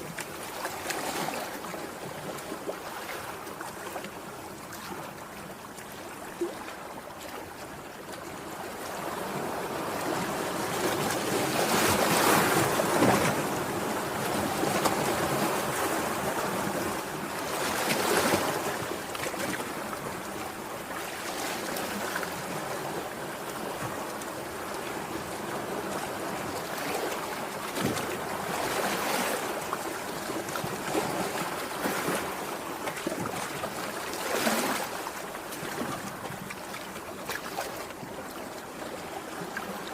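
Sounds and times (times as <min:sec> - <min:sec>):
sea waves breaking: 0:08.4 - 0:39.9.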